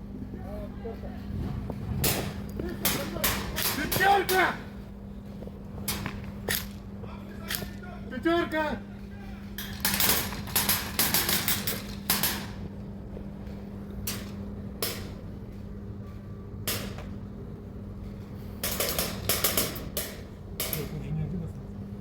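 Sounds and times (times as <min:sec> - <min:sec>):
steady low hum: 0:00.0 - 0:22.0
airsoft guns firing: 0:09.6 - 0:12.6.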